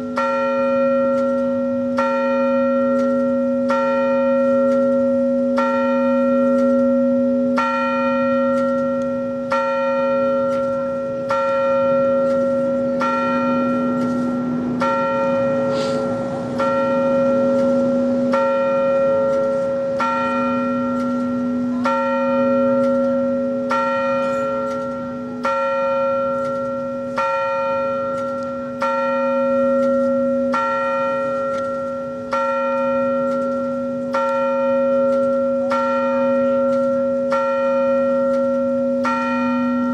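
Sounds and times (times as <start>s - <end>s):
bell tolling: 9.5s - 31.4s.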